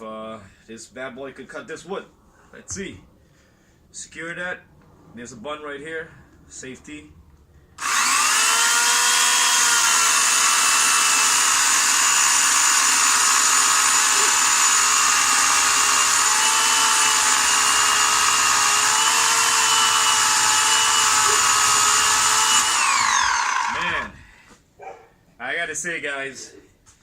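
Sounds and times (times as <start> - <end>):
electric chainsaw cutting wood: 7.8 - 24.2.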